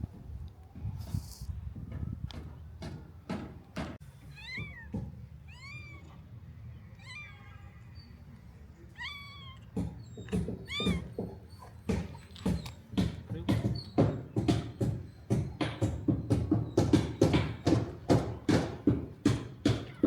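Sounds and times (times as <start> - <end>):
cat meowing: 4.3 - 6.2, 6.9 - 8.0, 8.9 - 11.2
short knocks: 9.7 - 20.0.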